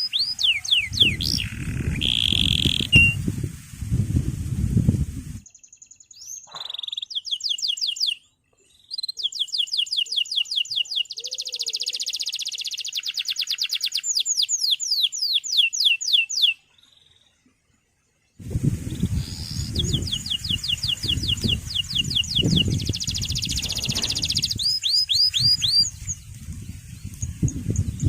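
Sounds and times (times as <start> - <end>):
canary singing fast trills: 0.0 - 3.3, 5.4 - 17.4, 18.4 - 28.0
loud low rumbling noise: 23.2 - 24.8.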